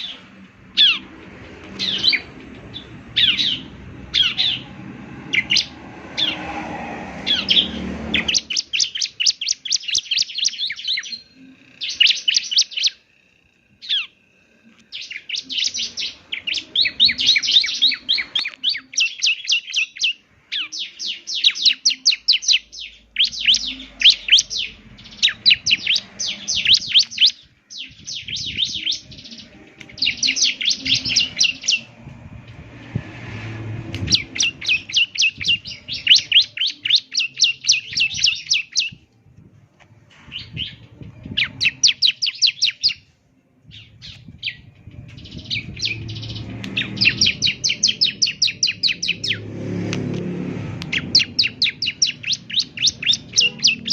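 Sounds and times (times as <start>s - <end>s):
bird trilling high chirps: 0.0s - 6.6s, 7.2s - 32.0s, 33.3s - 39.0s, 40.2s - 43.1s, 43.7s - 49.5s, 50.8s - 53.9s
low rumble: 0.0s - 8.5s, 22.9s - 26.9s, 27.9s - 36.3s, 38.9s - 41.9s, 43.6s - 53.9s.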